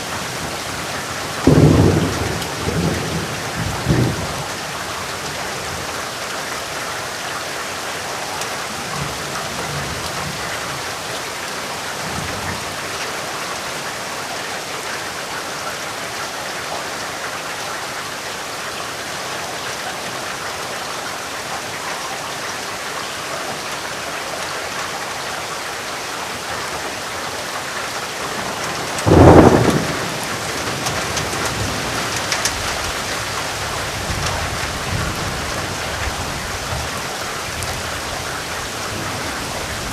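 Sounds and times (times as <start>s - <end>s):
heavy rain falling: 0.0s - 39.9s
low thunder rumbles: 1.4s - 4.5s, 28.3s - 39.9s
sharp thunderclap: 1.5s - 4.3s, 28.7s - 32.2s.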